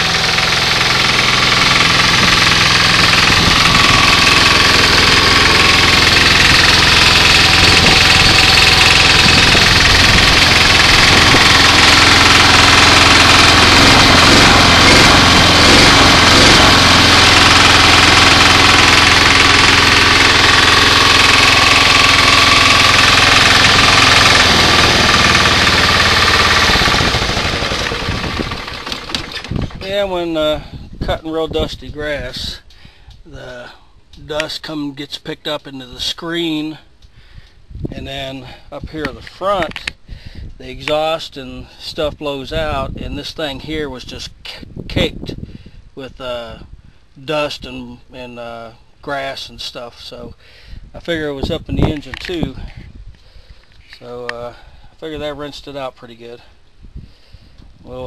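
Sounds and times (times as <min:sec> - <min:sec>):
small gasoline engine running: 0:00.0 - 0:30.8.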